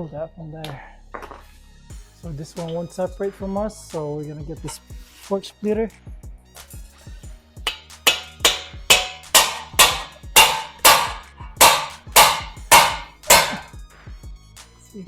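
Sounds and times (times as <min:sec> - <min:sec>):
hammer striking metal: 0:07.7 - 0:13.8.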